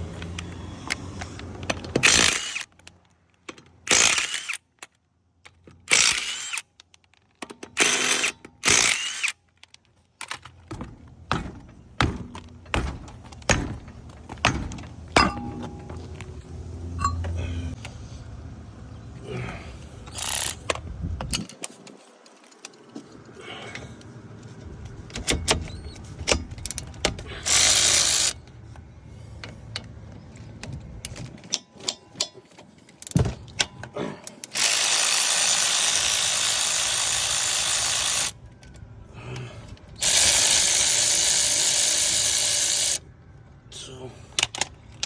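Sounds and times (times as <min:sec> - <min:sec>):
metal tool clicks and clanks: 0:12.3 - 0:16.3, 0:30.6 - 0:35.0.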